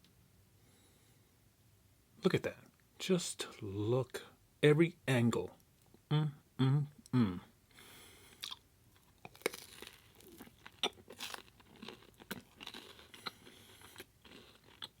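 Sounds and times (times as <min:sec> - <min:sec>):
bread sticks crunching: 0:08.4 - 0:15.0.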